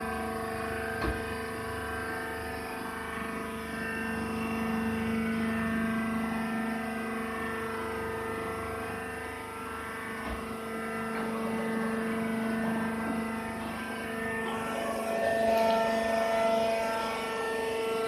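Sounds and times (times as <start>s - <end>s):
baling machine hum: 0.0s - 18.0s.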